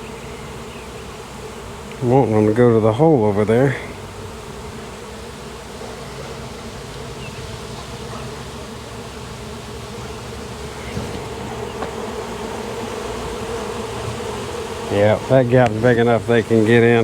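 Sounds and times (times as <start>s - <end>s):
swarm of bees buzzing: 0.0s - 17.0s.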